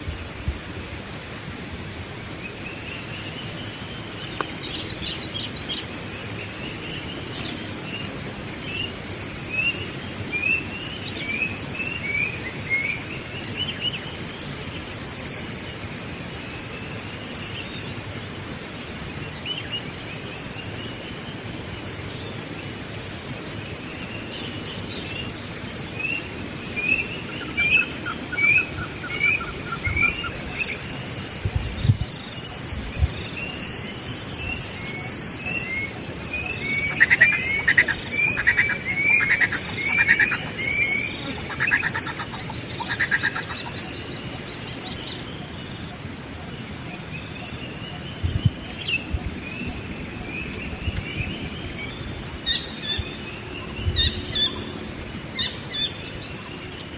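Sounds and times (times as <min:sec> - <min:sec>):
high-pitched insect whine: 0:00.0 - 0:56.9
birds chirping: 0:24.1 - 0:56.9.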